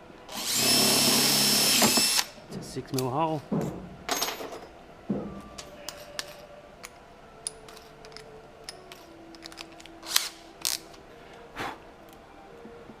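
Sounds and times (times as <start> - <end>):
drill bits clicking and rattling: 0.3 - 2.3.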